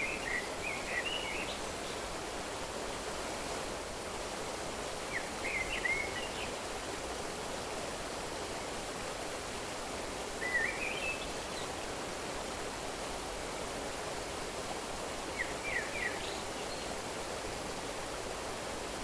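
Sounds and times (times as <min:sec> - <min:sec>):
stream rushing: 0:00.0 - 0:19.0.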